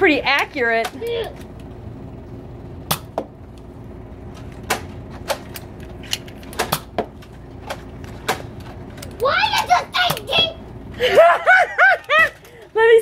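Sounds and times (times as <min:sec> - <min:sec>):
darts hitting things: 0:02.8 - 0:03.3, 0:04.6 - 0:05.6, 0:06.4 - 0:08.6.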